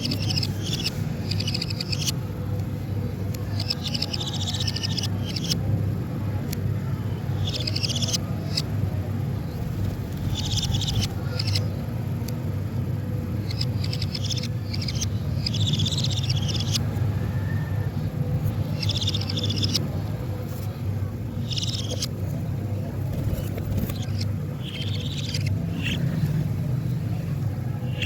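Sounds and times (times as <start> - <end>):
budgerigar chirping warble: 0.0 - 2.2, 3.4 - 5.7, 7.3 - 8.7, 10.2 - 11.8, 13.4 - 17.7, 18.7 - 20.0, 21.4 - 22.2, 23.4 - 26.2
steady low hum: 0.0 - 28.0.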